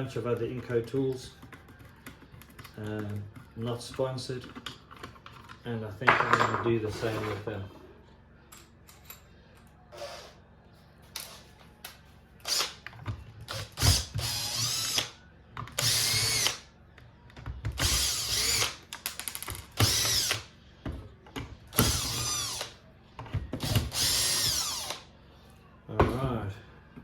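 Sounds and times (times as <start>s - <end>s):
cordless drill whining: 13.5s - 15.1s, 15.8s - 16.6s, 17.8s - 18.8s, 19.8s - 20.4s, 21.8s - 22.7s, 23.6s - 25.0s.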